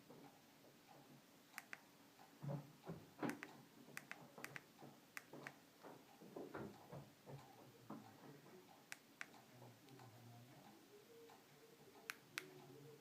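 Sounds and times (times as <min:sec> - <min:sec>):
faint sharp clicks: 0:01.5 - 0:02.3, 0:03.2 - 0:05.6, 0:08.7 - 0:10.1, 0:11.3 - 0:12.7.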